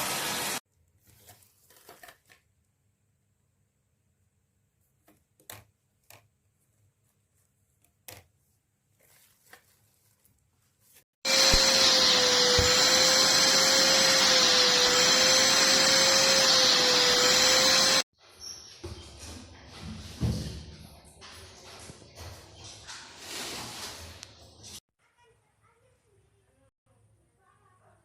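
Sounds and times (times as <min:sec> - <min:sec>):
vacuum cleaner running: 0:00.0 - 0:00.6, 0:11.2 - 0:18.1.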